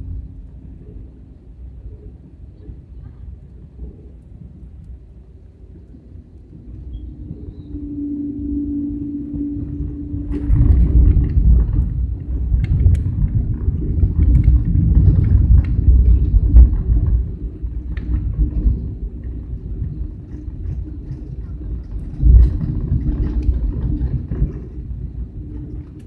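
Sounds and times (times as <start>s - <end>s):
airliner engine hum: 0.0s - 26.0s
loud low rumble: 0.0s - 26.0s.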